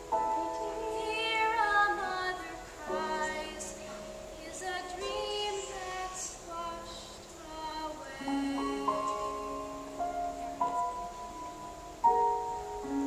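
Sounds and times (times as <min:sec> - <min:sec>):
piano accompaniment: 0:00.0 - 0:13.0
woman singing slow song: 0:00.1 - 0:10.4.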